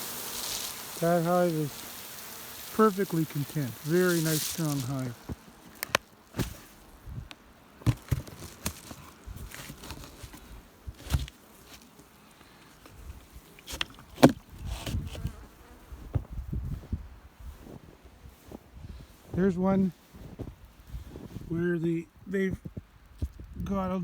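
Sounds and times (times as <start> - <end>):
bees buzzing in a hive: 0.0 - 16.4.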